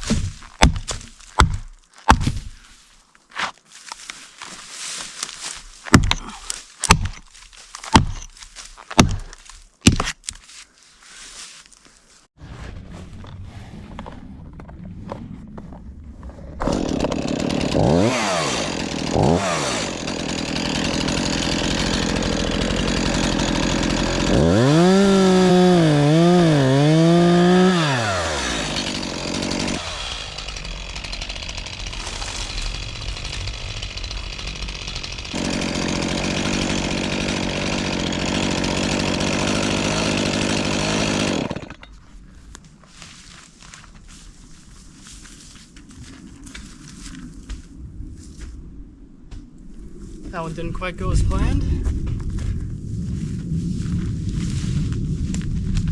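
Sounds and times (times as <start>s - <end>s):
chainsaw revving: 16.6s - 41.8s.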